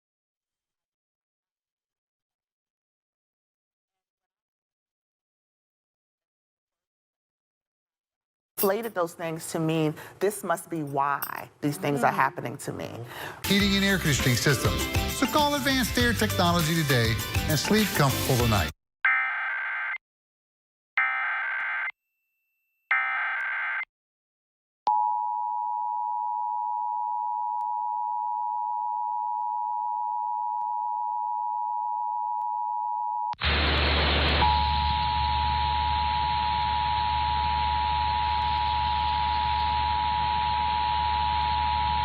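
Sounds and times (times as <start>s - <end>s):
loud hiss: 33.4s - 34.4s.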